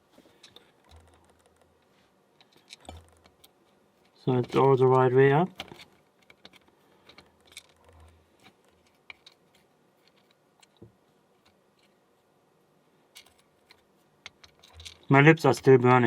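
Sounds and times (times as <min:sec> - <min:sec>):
small metal pins clicking: 0:00.4 - 0:10.8, 0:13.1 - 0:15.2.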